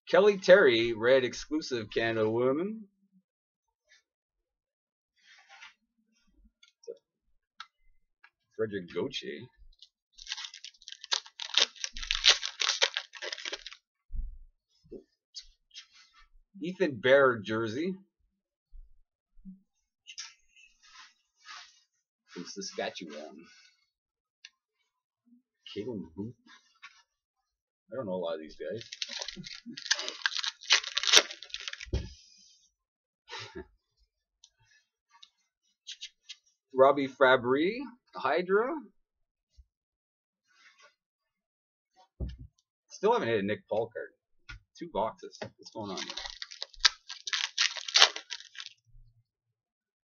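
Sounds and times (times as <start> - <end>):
trading cards rustling: 10.2 - 13.8, 28.7 - 31.9, 45.7 - 48.7
wrapper crinkling and tearing: 10.2 - 13.8, 28.7 - 32.0, 45.7 - 48.8
soft thump: 42.2 - 42.5.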